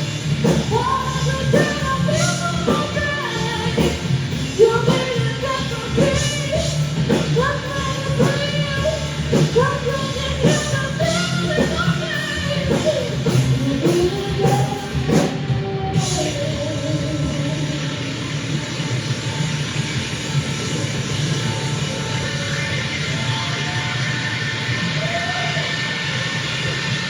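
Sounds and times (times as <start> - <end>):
person singing: 0.0 - 18.6
bass: 0.0 - 27.0.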